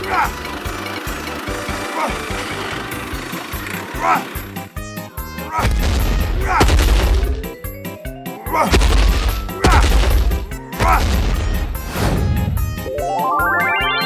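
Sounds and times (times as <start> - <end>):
background music: 0.0 - 14.0
heavy crashing hits: 5.6 - 7.6, 8.7 - 12.4.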